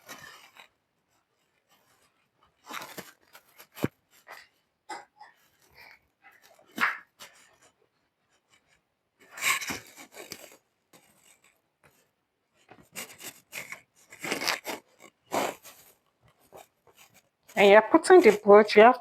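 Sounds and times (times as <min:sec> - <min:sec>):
fabric rustling: 0:05.4 - 0:19.0.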